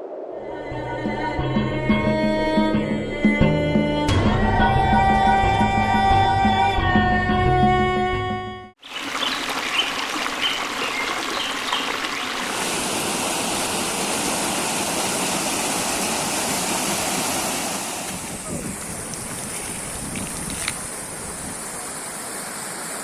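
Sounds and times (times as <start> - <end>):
stream water rushing: 8.8 - 23.0
high-pitched hiss: 18.3 - 23.0.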